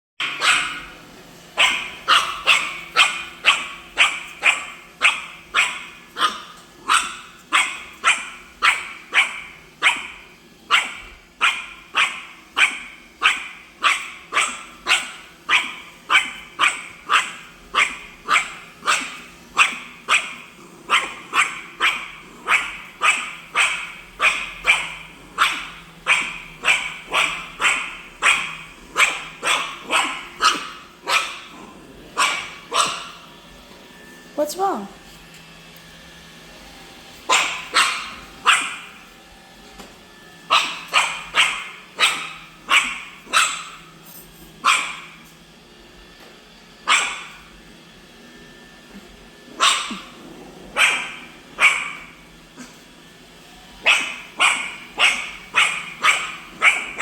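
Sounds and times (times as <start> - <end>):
small dog barking: 0.2 - 1.0, 1.6 - 33.3, 37.3 - 39.0, 40.4 - 44.0, 44.6 - 45.2, 46.8 - 47.5, 49.5 - 52.8, 53.8 - 57.0
robot vacuum humming: 0.2 - 57.0.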